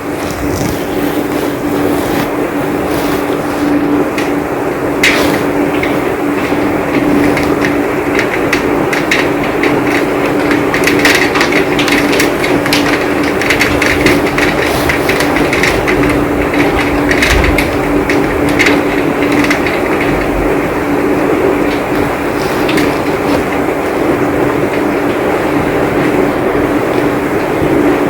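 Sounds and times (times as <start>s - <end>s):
steady low hum: 0.0s - 8.9s
heavy rain: 0.0s - 28.0s
rain drops hitting close by: 0.0s - 28.0s.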